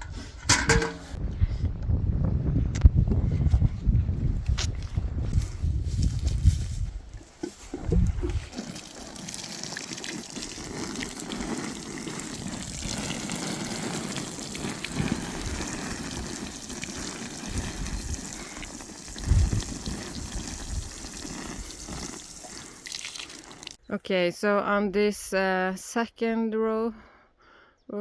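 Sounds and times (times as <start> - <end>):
water pouring and splashing: 5.8 - 23.8.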